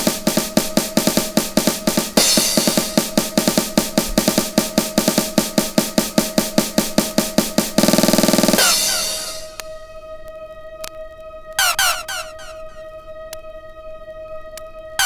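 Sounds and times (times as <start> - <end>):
electronic dance music: 0.0 - 9.6, 11.6 - 12.6
rapid drum roll: 0.0 - 9.6
cymbal crash: 7.8 - 9.7.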